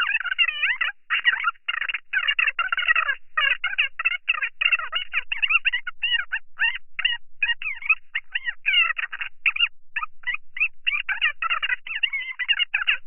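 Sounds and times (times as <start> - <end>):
fast-forward high-pitched chatter: 0.0 - 13.0.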